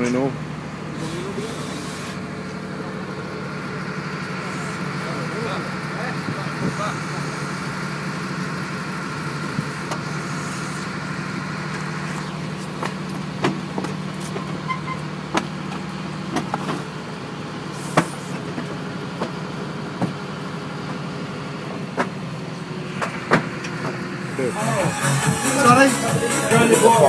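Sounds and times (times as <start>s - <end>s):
boat engine running: 0.0s - 16.5s.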